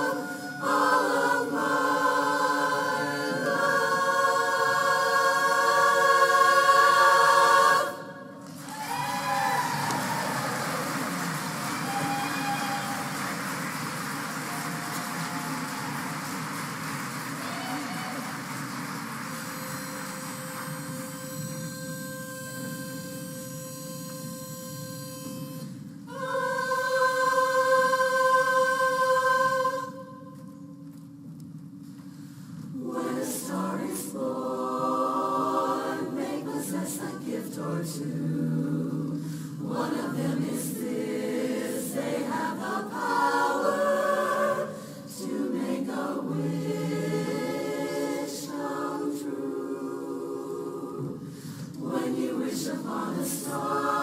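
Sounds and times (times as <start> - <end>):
women's chorus singing a cappella: 0.0 - 13.2, 19.4 - 30.5, 32.7 - 54.0
pitch pipe note: 19.6 - 25.9.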